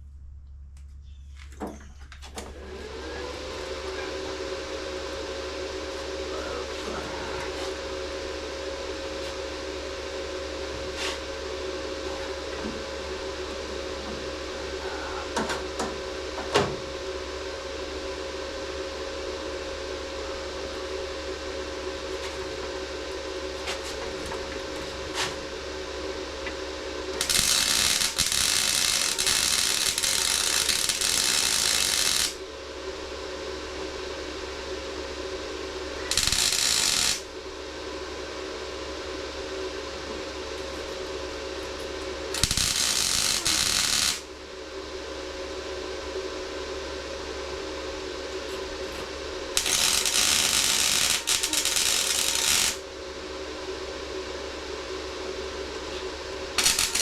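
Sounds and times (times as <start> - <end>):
fan-like hum: 0.0 - 57.0
welder arc crackling: 27.1 - 32.4, 36.1 - 37.3, 42.3 - 44.3, 49.5 - 52.8, 56.5 - 57.0.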